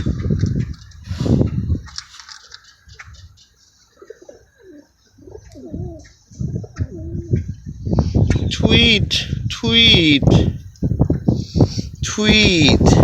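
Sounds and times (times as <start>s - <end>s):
bird cooing: 3.9s - 7.5s.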